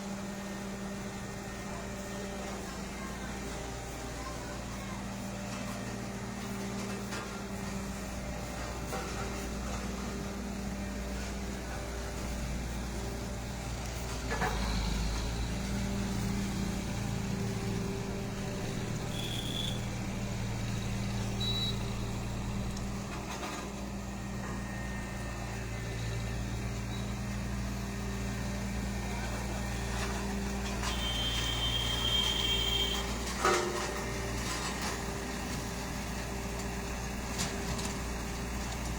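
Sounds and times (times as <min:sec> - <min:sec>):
road roller diesel engine: 0:00.0 - 0:38.9
high beep: 0:21.4 - 0:21.8.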